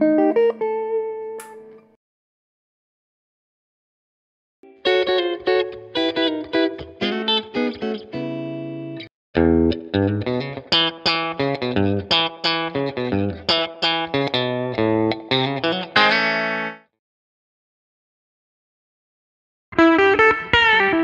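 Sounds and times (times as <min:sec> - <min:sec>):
electric guitar playing: 0:00.0 - 0:02.0, 0:04.6 - 0:16.8, 0:19.7 - 0:21.0.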